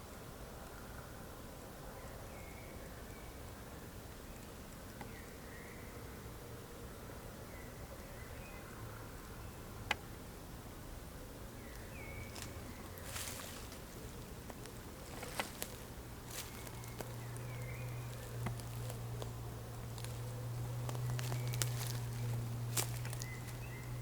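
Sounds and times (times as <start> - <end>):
low steady hum: 0.0 - 24.0
bird chirps: 11.6 - 24.0
twigs snapping: 11.7 - 24.0
footsteps through undergrowth: 11.9 - 24.0.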